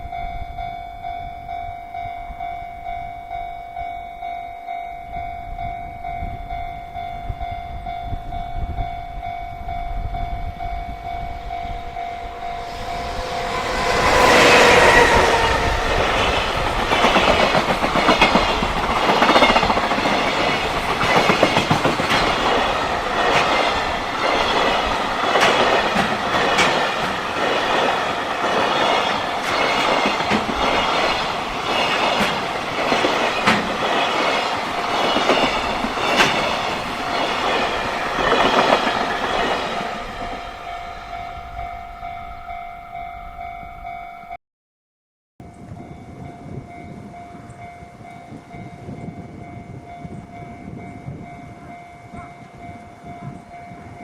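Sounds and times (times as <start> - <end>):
level-crossing warning bell: 0.0 - 44.4, 45.4 - 54.0
wind rumble: 5.0 - 43.9, 45.4 - 54.0
train horn: 9.4 - 17.1
train wheels clattering over rails: 12.4 - 40.4.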